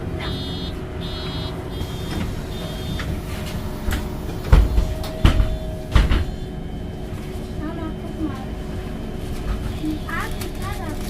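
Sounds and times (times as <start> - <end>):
bus drivetrain rumble: 0.0 - 11.0
faint steady whine: 0.0 - 11.0
faint high beep: 0.2 - 6.6
heavy low thumps: 0.2 - 6.8.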